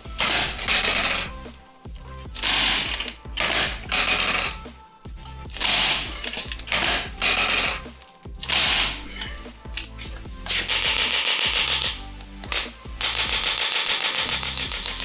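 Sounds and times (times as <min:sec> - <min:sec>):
background music with steady bass: 0:00.0 - 0:15.0
bright rattling bursts: 0:00.0 - 0:15.0.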